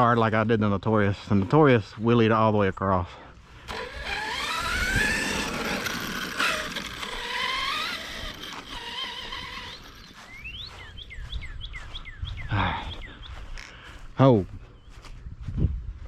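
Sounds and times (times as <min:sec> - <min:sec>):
electric motor whining: 0:03.6 - 0:10.8
high falling chirps: 0:03.7 - 0:12.4.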